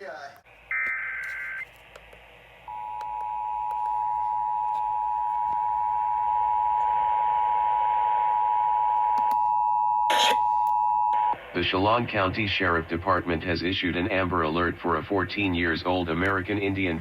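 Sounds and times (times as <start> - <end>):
radio hiss: 0.5 - 2.8, 11.2 - 17.0
steady dual tone alarm: 0.7 - 1.6, 2.7 - 11.4.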